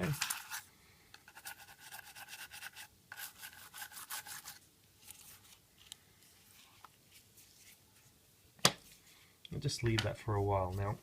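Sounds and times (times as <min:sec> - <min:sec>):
toothbrush scrubbing: 0:01.3 - 0:04.6.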